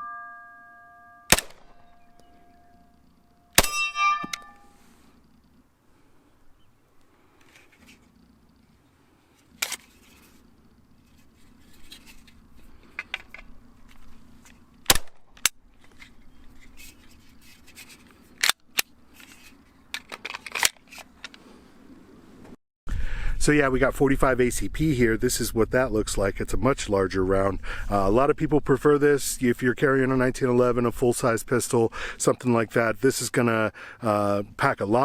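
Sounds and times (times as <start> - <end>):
pistol shots: 1.3 - 1.8.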